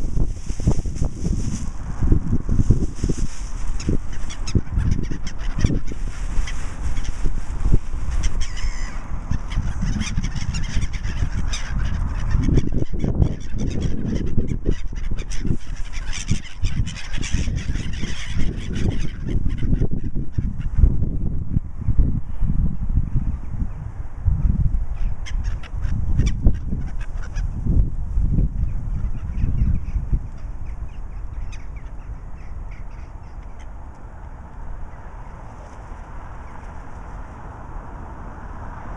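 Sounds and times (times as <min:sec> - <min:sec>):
wind rumble on microphone: 0:00.0 - 0:38.9
birds calling: 0:03.5 - 0:20.8, 0:24.9 - 0:27.6, 0:28.6 - 0:37.4.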